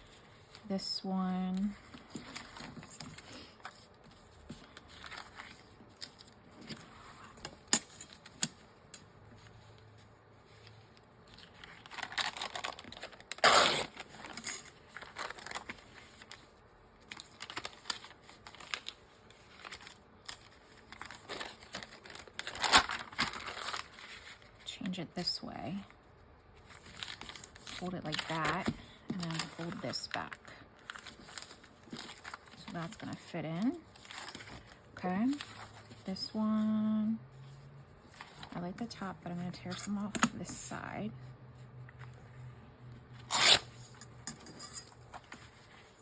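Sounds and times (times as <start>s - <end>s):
paper rustling and crinkling: 1.5s - 24.7s, 26.0s - 36.8s, 37.4s - 38.6s, 44.8s - 46.0s
paper tearing: 11.9s - 15.7s, 43.2s - 43.9s.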